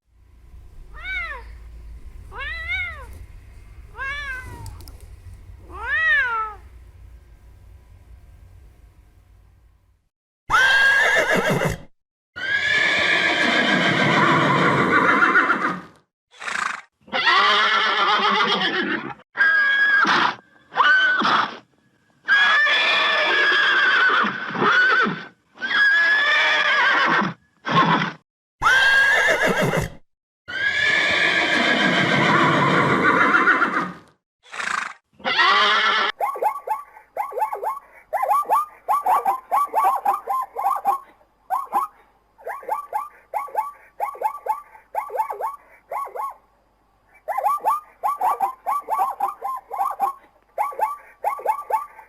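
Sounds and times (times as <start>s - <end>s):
horse whinnying: 10.5s - 21.6s, 22.3s - 36.2s.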